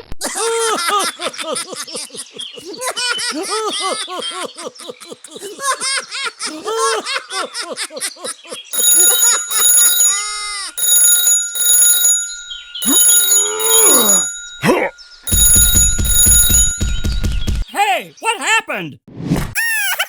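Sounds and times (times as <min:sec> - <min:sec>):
laughter: 0:00.2 - 0:08.8, 0:19.6 - 0:20.0
alarm ringing in bursts: 0:08.8 - 0:17.6.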